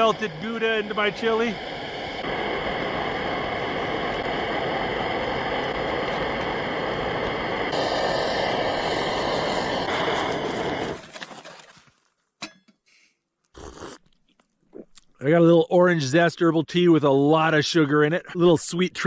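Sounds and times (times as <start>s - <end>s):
camp stove burner hissing: 0.0s - 11.2s.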